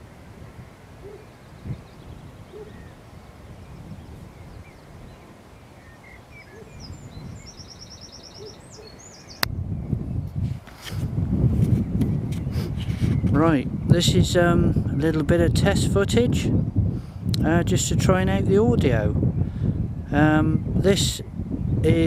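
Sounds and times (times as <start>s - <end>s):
birds chirping: 0.0s - 11.0s, 11.7s - 15.4s
wind rumbling on microphone: 0.0s - 22.0s
low bird hoots: 1.0s - 5.2s, 5.8s - 9.4s
bird trill: 1.0s - 9.5s.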